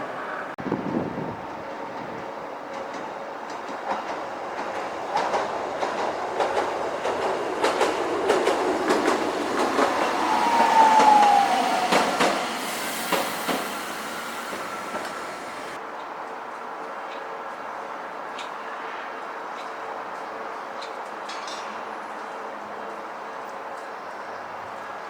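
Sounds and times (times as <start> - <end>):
tram wheels clicking over rails: 2.0 - 15.8
tram wheel squeal: 5.1 - 15.8.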